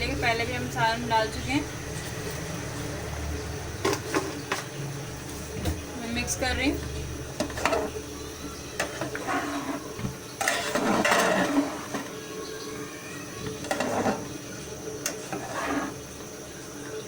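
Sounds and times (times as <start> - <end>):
spoon stirring rice in a pot: 7.3 - 12.3, 13.4 - 16.0
spoon scraping and knocking a pot: 7.4 - 8.0, 8.8 - 12.2, 13.4 - 14.4, 15.0 - 16.0.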